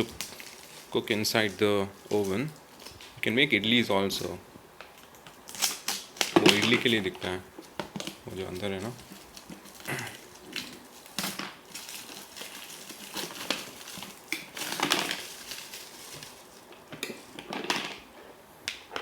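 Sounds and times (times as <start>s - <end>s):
plastic cookware rustling and clicking: 4.9s - 18.2s.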